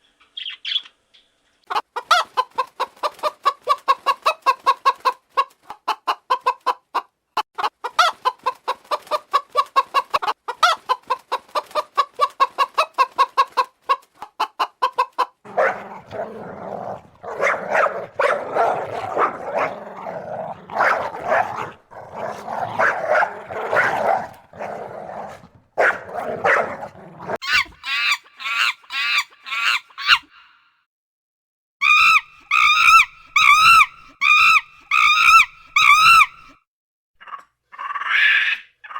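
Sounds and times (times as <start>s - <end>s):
chickens clucking: 1.7s - 30.1s
rough fowl calls: 15.5s - 30.3s.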